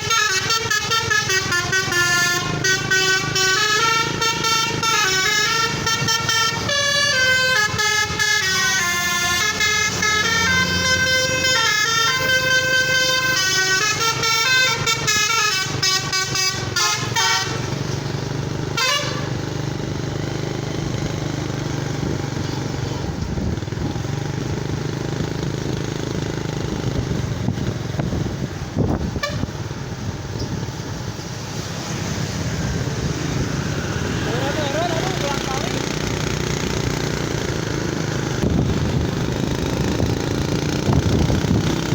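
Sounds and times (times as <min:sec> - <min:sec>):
musical horn playing a tune: 0:00.0 - 0:17.9, 0:18.7 - 0:19.5, 0:29.1 - 0:29.7
heavy vehicle engine running: 0:00.0 - 0:41.9
road noise: 0:00.0 - 0:41.9.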